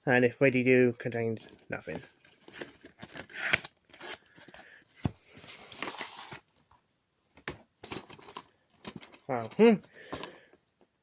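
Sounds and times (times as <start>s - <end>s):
packaging scraping and rubbing: 2.1s - 4.6s, 5.4s - 6.5s.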